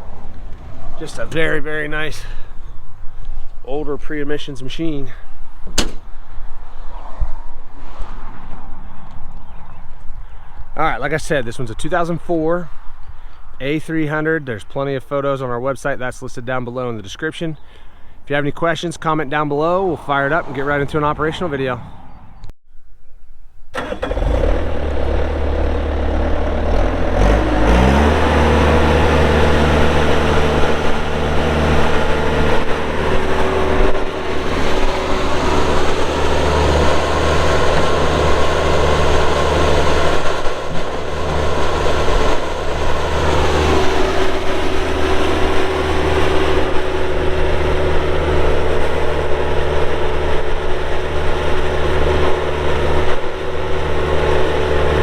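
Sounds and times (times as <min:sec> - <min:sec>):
diesel engine running: 0:23.8 - 0:55.0.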